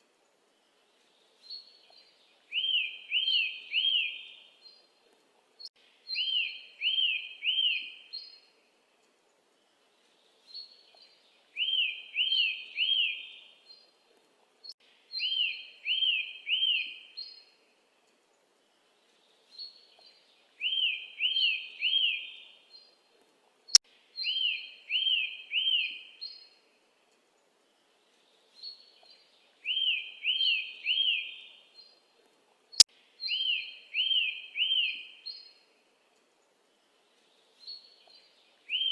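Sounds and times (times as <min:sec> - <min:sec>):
bird chirping song: 0:00.5 - 0:05.0, 0:05.8 - 0:08.7, 0:09.3 - 0:14.0, 0:14.6 - 0:17.6, 0:18.7 - 0:23.0, 0:24.2 - 0:26.6, 0:27.7 - 0:32.1, 0:33.2 - 0:35.8, 0:36.7 - 0:38.9.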